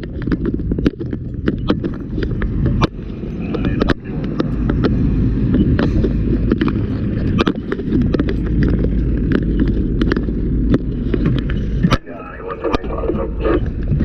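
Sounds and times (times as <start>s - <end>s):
sharp knocks and cracks: 0.0s - 12.1s
loud low rumble: 0.0s - 14.0s.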